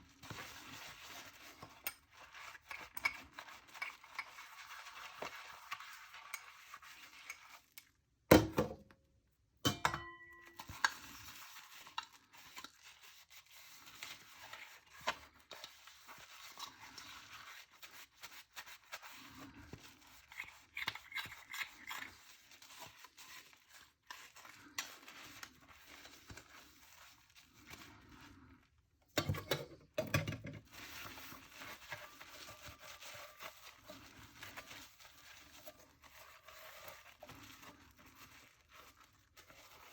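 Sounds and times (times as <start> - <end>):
dishes and cutlery clinking: 9.6 - 11.0.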